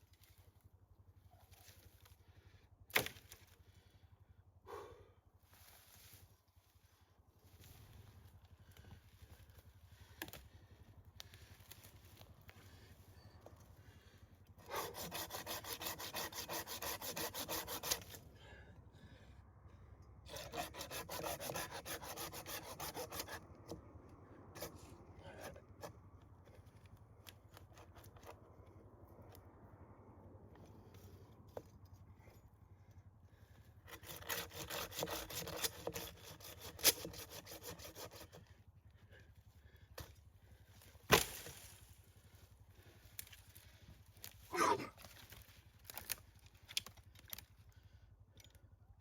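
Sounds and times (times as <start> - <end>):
hand saw cutting wood: 14.6 - 18.3, 20.3 - 26.1, 33.8 - 38.6, 41.0 - 41.8, 44.2 - 46.2.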